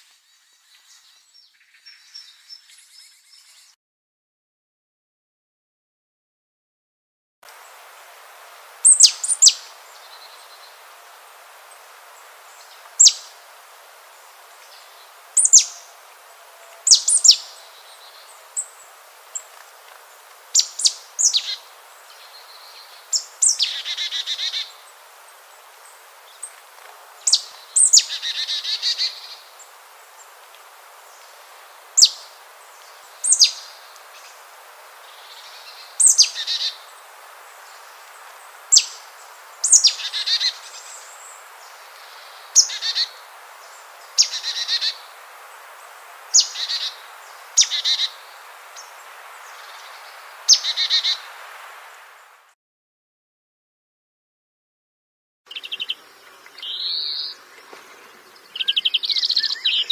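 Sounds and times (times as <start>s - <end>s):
background hiss: 7.5s - 52.6s, 55.5s - 59.9s
bird whistling: 58.6s - 59.9s.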